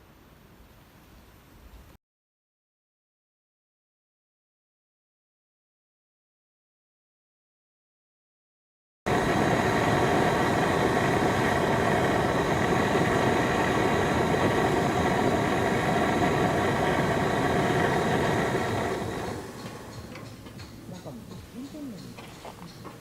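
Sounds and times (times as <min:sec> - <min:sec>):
engine running steadily: 0:09.1 - 0:23.0.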